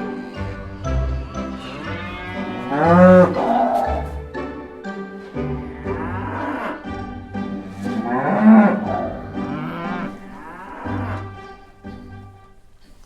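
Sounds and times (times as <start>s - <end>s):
cattle mooing: 0.0s - 4.3s, 5.3s - 12.1s
soft background music: 0.0s - 13.0s.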